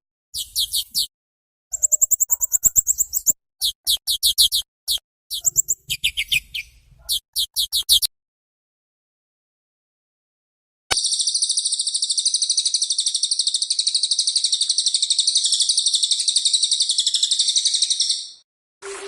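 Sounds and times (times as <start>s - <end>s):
songbird high fast trill: 0.4s - 1.1s, 1.7s - 8.1s.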